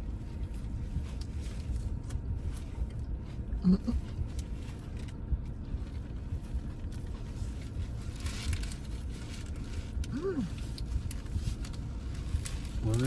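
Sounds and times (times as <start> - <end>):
low rumble: 0.0 - 13.0
soft rustle: 0.0 - 13.0
person humming mm: 3.6 - 4.0, 10.1 - 10.5.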